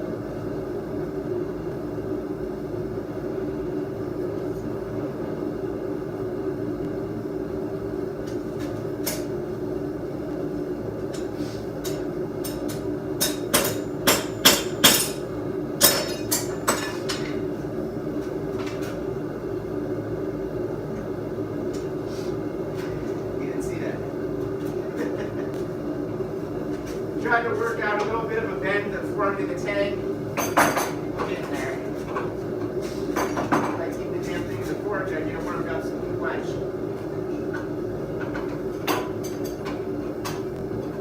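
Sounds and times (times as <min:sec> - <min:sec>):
hammer ringing on anvil: 0:13.2 - 0:15.2.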